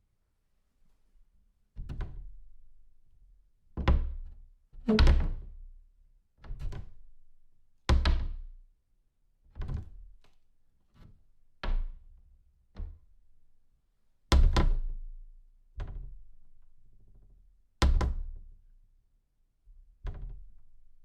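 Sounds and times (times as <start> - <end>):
door shutting with a thud: 4.9 - 5.5.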